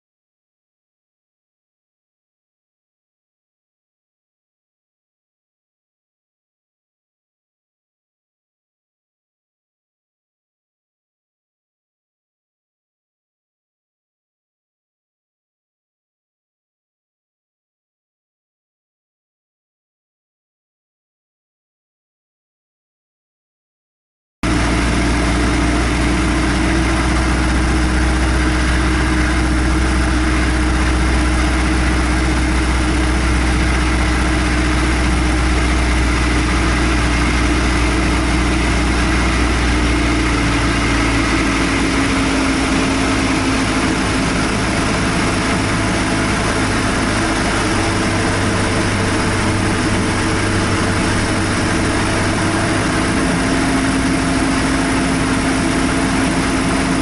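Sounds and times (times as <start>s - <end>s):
propeller plane engine running: 24.4s - 57.0s.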